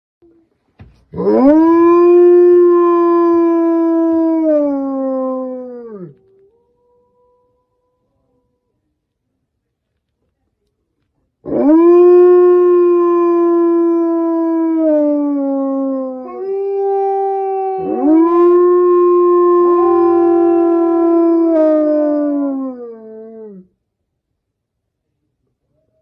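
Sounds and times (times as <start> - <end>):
wolves howling: 1.2 - 8.5, 11.5 - 23.6.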